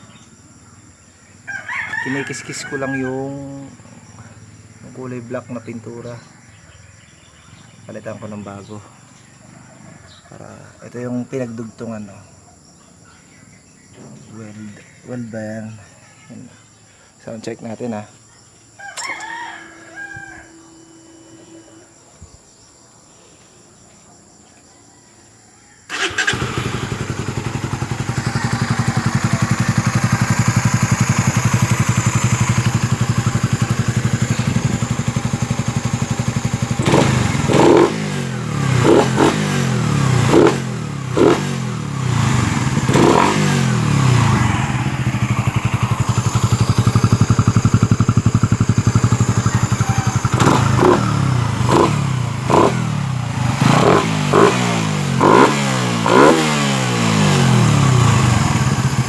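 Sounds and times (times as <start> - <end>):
motorcycle engine idling: 25.9 - 59.0
motorcycle throttle blips: 25.9 - 59.0.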